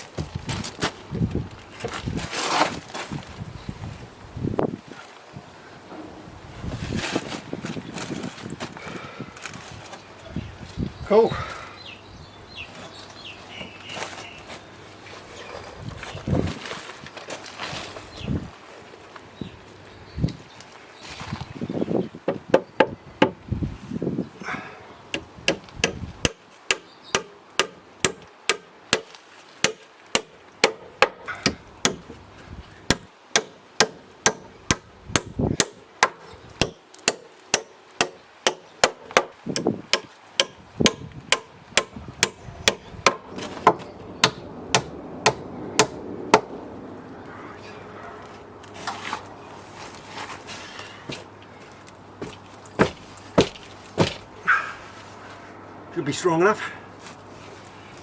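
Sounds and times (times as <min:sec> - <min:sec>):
hammer driving nails into timber: 0:25.2 - 0:32.1, 0:32.9 - 0:46.5.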